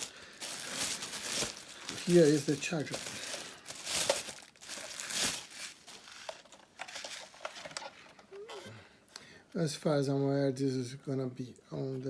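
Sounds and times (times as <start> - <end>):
packaging crinkling and rustling: 0.0 - 8.1.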